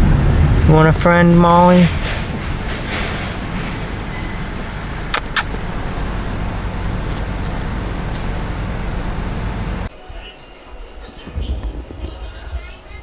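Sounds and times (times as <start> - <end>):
car cabin road rumble: 0.0 - 9.9
sharp clicks: 1.9 - 9.5.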